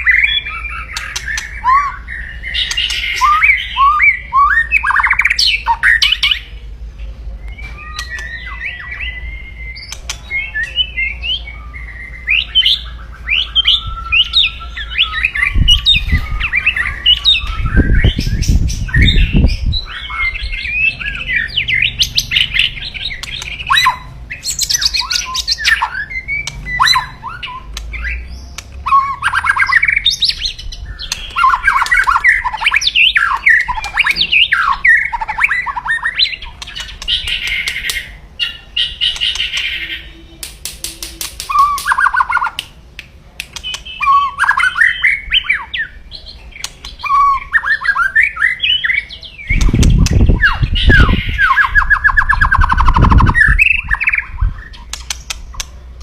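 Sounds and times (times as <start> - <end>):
bird singing chirps and trills: 0.0 - 42.6, 43.5 - 56.0.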